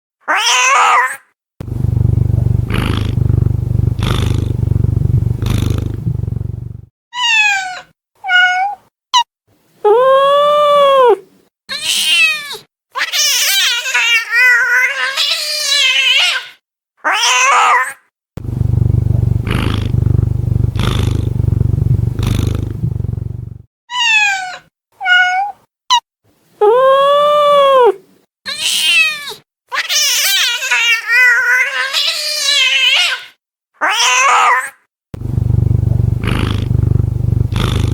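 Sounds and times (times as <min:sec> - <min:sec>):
cat meowing and yowling: 0:00.3 - 0:01.2, 0:07.1 - 0:08.8, 0:10.0 - 0:18.0, 0:23.9 - 0:26.0, 0:28.5 - 0:34.8
cat screeching: 0:00.3 - 0:01.2, 0:07.2 - 0:08.8, 0:11.7 - 0:18.0, 0:23.9 - 0:26.0, 0:28.5 - 0:34.8
cat growling: 0:01.6 - 0:06.9, 0:18.4 - 0:23.7, 0:35.2 - 0:37.9.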